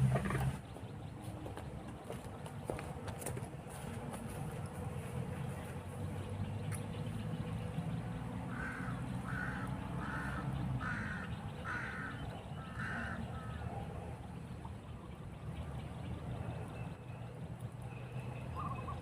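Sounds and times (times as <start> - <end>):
crow cawing: 8.5 - 13.6.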